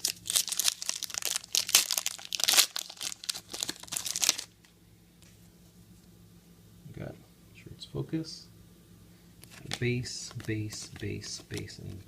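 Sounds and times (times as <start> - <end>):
wrapper crinkling and tearing: 0.0 - 4.6.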